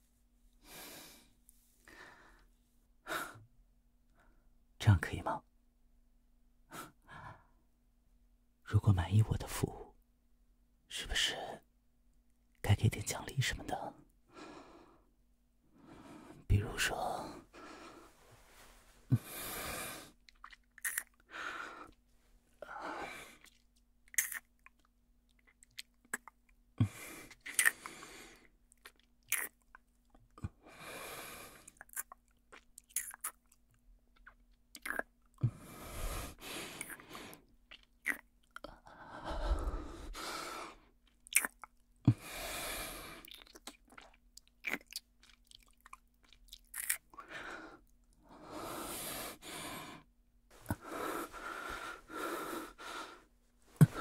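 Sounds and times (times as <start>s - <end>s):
person breathing: 0.6s - 3.4s, 15.7s - 20.2s, 35.4s - 37.4s, 38.7s - 40.9s, 42.1s - 43.3s, 47.2s - 54.0s
kissing lip smacks: 24.1s - 24.5s, 29.3s - 29.6s.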